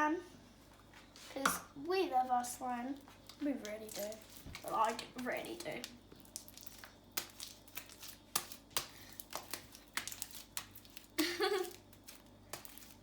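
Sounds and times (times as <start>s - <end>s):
sticky slime clicks and crackles: 3.3s - 11.2s.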